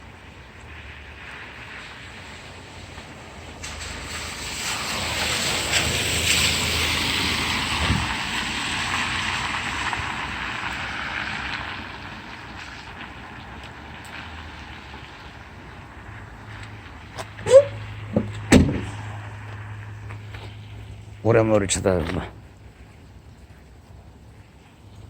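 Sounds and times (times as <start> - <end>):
car driving past: 3.5 - 21.2.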